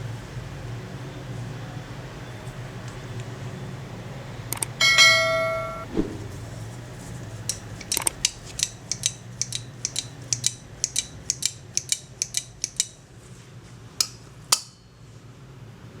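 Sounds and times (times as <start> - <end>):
steady low hum: 4.7 - 7.8
short metallic ring: 4.8 - 5.9
pruners clicking open and shut: 7.5 - 13.0.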